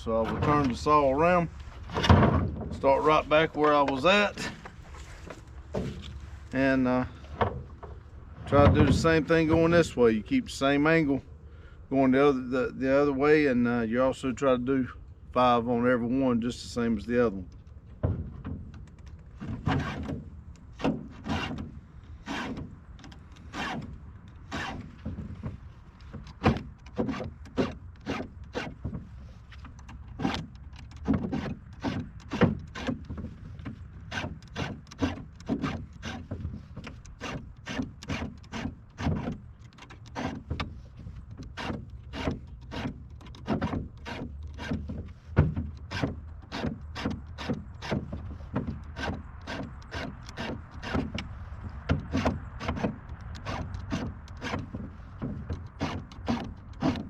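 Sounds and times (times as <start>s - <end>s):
file rasping on chainsaw chain: 21.2s - 22.7s, 23.3s - 24.9s, 26.4s - 28.8s, 31.2s - 33.1s, 34.0s - 44.9s, 45.8s - 51.4s, 52.0s - 57.0s.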